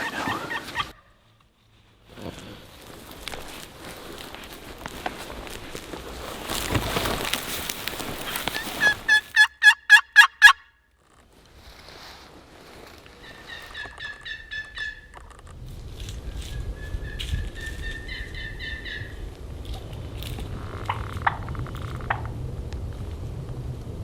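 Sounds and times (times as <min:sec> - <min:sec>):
turkey calls: 0:00.0 - 0:01.2, 0:08.2 - 0:10.7, 0:13.1 - 0:15.2, 0:16.4 - 0:20.0
rustling footsteps: 0:00.0 - 0:09.5, 0:11.0 - 0:18.1.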